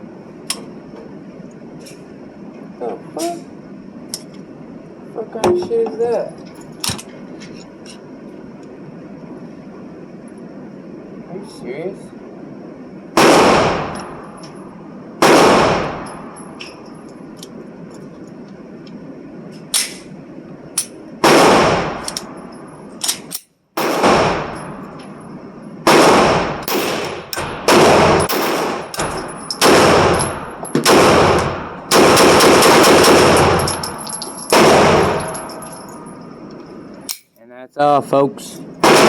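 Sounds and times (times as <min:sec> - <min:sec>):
pistol shots echoing: 0:13.2 - 0:14.2, 0:15.2 - 0:16.4, 0:21.2 - 0:22.2, 0:23.8 - 0:24.9, 0:25.9 - 0:36.2.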